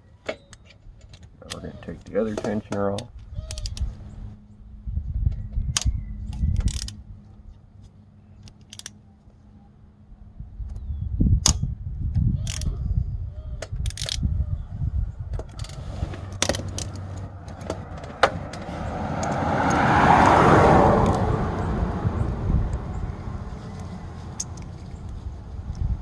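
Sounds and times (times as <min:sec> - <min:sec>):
low handling rumble: 0:00.8 - 0:26.0
broad rushing noise: 0:15.6 - 0:26.0.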